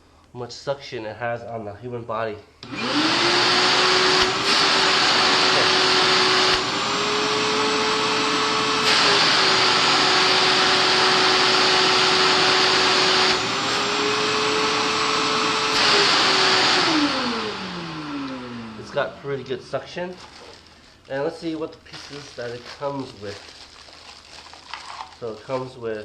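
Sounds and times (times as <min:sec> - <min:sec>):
shop vac running: 0:02.6 - 0:26.0.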